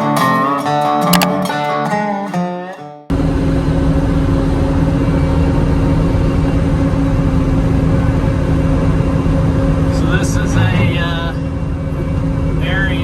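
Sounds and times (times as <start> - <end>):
diesel engine running: 3.1 - 13.0.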